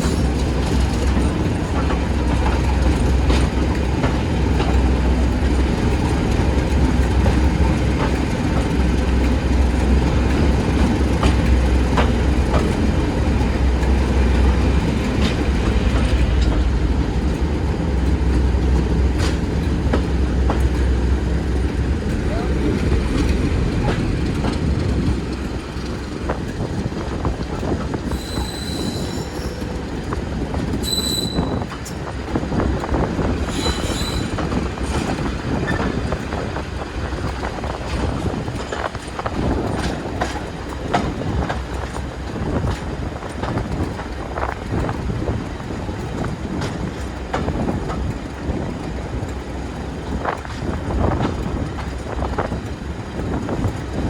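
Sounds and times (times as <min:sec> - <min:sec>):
train rumbling over rail joints: 0:00.0 - 0:54.0
high-pitched wheel squeals: 0:28.1 - 0:29.7, 0:30.8 - 0:31.7, 0:33.5 - 0:34.4.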